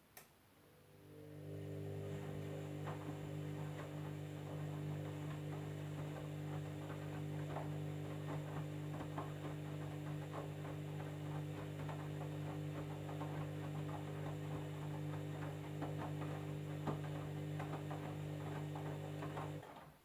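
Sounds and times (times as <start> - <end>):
washing machine motor hum: 0.6 - 20.0
faint clicks and knocks: 2.1 - 20.0.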